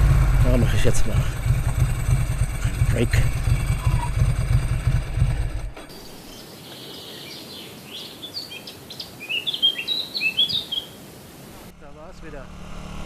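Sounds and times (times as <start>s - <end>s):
motorcycle engine idling: 0.0s - 6.4s
birds chirping and singing: 3.0s - 11.2s.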